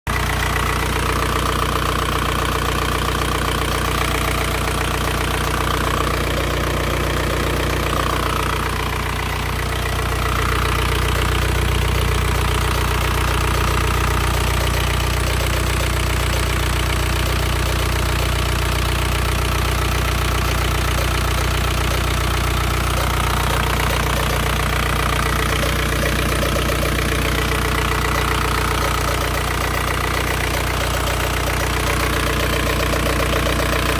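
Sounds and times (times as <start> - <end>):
diesel engine idling: 0.1 - 33.9.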